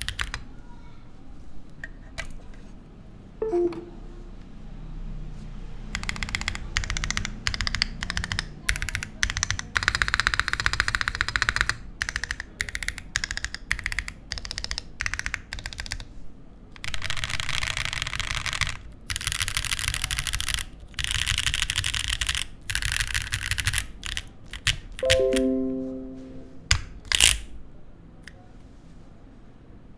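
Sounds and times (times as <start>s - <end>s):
mechanical keyboard typing: 0.0s - 0.4s, 5.9s - 16.1s, 16.8s - 25.5s
music: 3.4s - 4.5s, 25.0s - 26.9s.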